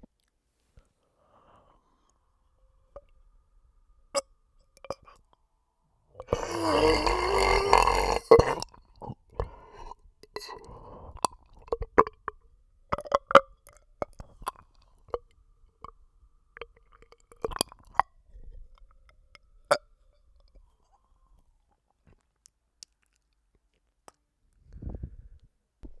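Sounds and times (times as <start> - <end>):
person burping: 6.2 - 13.4.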